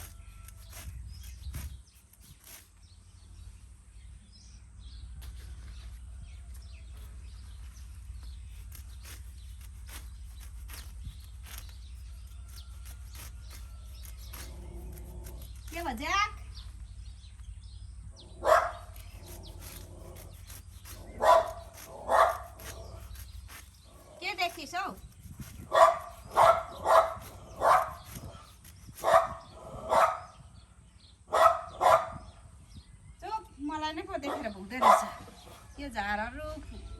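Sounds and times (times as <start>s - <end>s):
grass being cut by hand: 0.0s - 3.3s, 6.5s - 16.4s, 18.5s - 29.6s
dog barking sharply: 18.4s - 18.8s.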